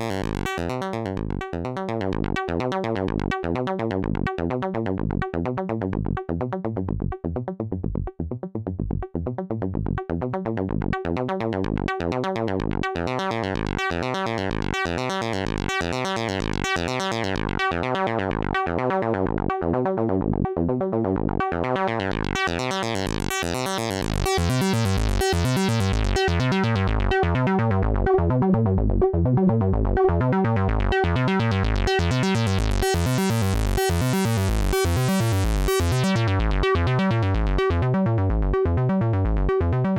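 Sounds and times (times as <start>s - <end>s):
synthesizer sequenced notes: 11.6s - 39.9s.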